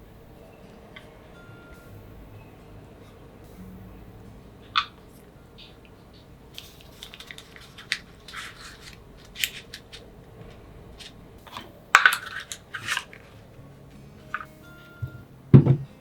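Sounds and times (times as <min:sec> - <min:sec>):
utensils clicking and tapping: 0:04.7 - 0:13.5.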